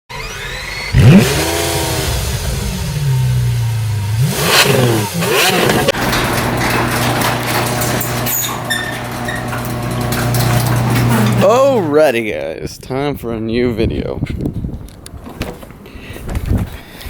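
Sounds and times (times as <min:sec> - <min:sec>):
car engine revving and idling: 0:00.4 - 0:08.3.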